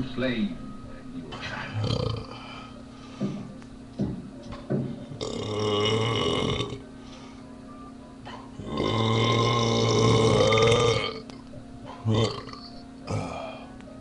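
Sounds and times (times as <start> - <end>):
man belching: 1.6 - 2.5, 5.2 - 6.8, 8.6 - 11.3, 12.0 - 13.6.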